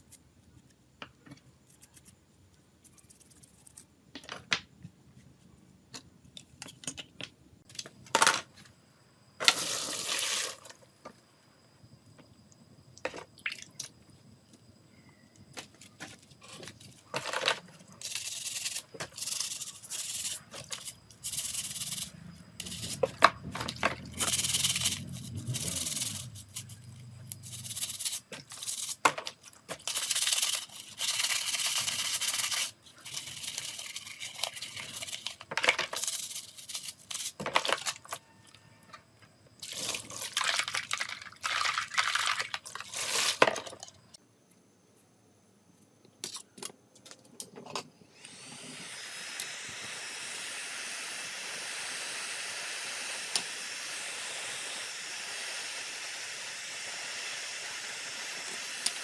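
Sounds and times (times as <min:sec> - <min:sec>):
scratchy rubbing strokes: 0:24.2 - 0:26.8.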